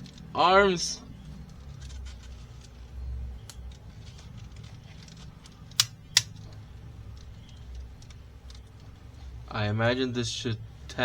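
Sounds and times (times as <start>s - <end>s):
faint handling ticks: 0.0s - 11.0s
sharp plastic clicks: 1.4s - 9.0s.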